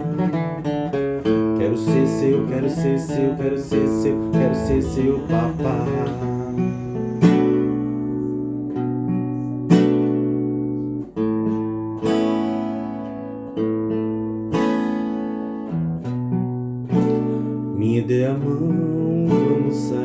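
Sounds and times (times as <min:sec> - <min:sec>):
acoustic guitar chords: 0:00.0 - 0:20.0.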